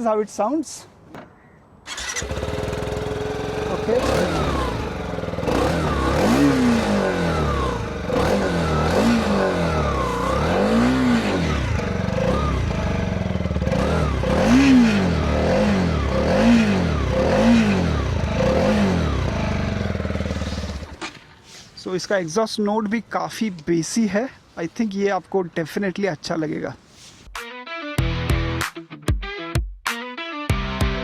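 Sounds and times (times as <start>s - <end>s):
motorcycle engine revving: 1.9s - 21.2s.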